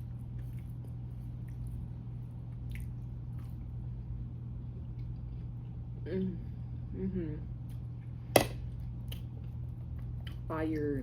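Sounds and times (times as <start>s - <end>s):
person chewing crispy food: 0.0s - 4.0s.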